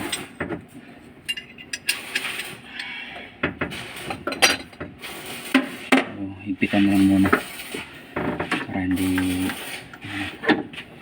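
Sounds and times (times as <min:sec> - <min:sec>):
metal tools clinking on engine: 0:01.2 - 0:02.6, 0:04.0 - 0:04.8.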